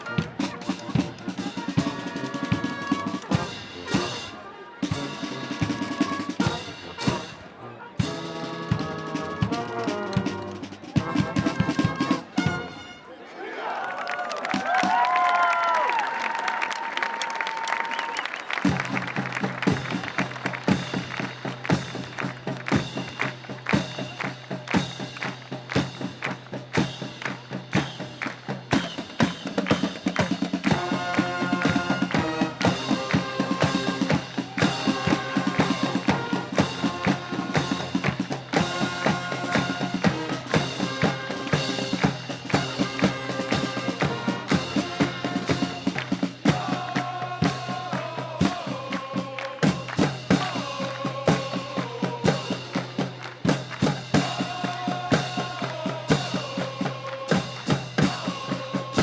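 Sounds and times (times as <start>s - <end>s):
snare and bass drum: 0.0s - 12.8s, 18.6s - 59.0s
brass and woodwind chords: 0.0s - 13.3s, 30.6s - 47.9s.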